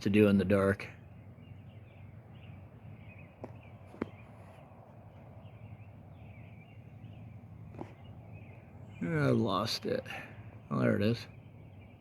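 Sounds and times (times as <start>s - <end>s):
faint birds chirping: 0.0s - 12.0s.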